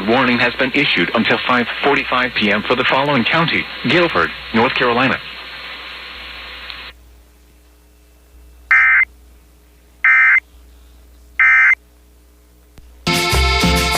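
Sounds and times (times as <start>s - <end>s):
digital data tone bursts: 8.7s - 9.1s, 10.0s - 10.4s, 11.4s - 11.8s.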